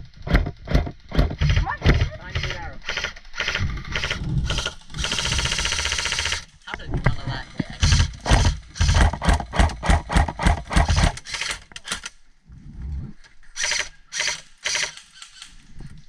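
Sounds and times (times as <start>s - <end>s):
airsoft gun shots: 7.8s - 11.6s.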